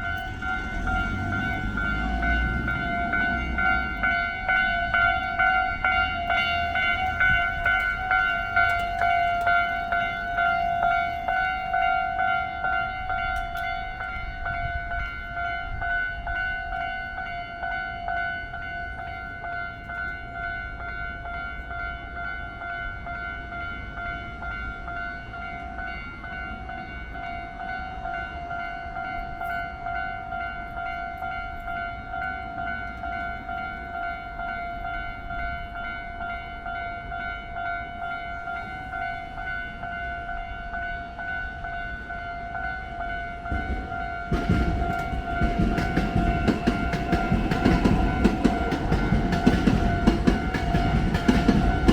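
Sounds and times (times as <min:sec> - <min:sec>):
crossing warning bell ringing: 0:00.0 - 0:51.9.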